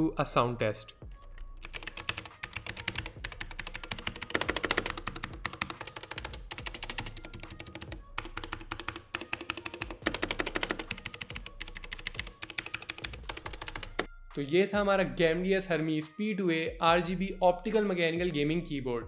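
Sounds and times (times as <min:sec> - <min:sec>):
mechanical keyboard typing: 0:01.6 - 0:14.1.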